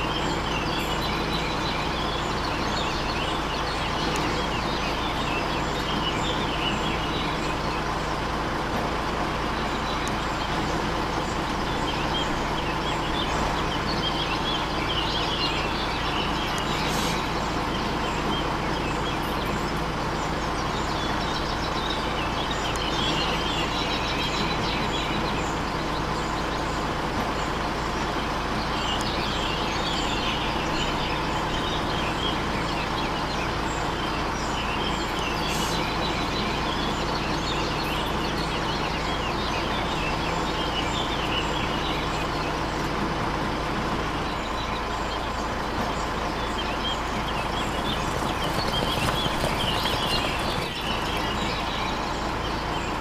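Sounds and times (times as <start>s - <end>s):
birds chirping: 0.0s - 53.0s.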